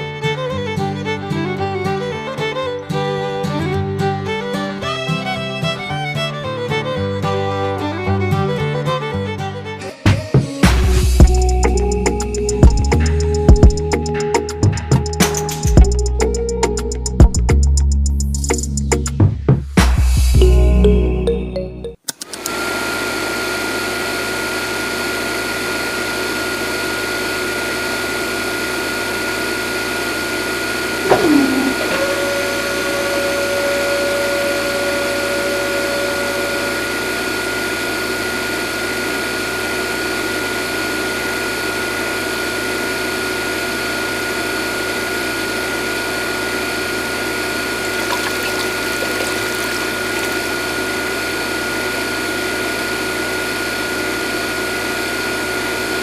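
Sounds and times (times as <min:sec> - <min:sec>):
tone sliding downward: 0:31.0 - 0:33.3.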